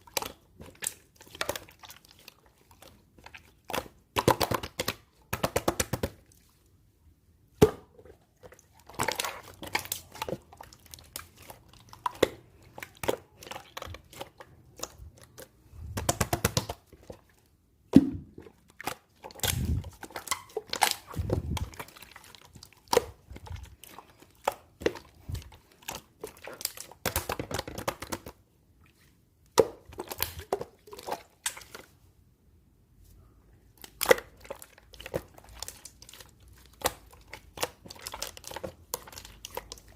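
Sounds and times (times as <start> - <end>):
slime squishing and popping: 3.3 - 6.2, 8.8 - 17.0, 17.9 - 28.4, 29.5 - 31.8.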